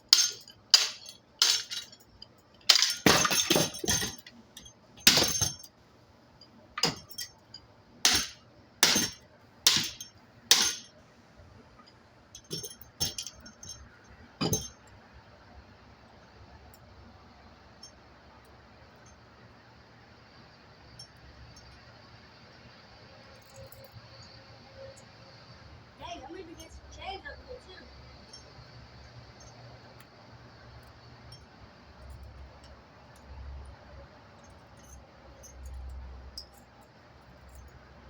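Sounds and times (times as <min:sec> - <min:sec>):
fan pieces clinking and clattering: 0:00.0 - 0:11.0, 0:11.8 - 0:15.0, 0:28.1 - 0:37.9.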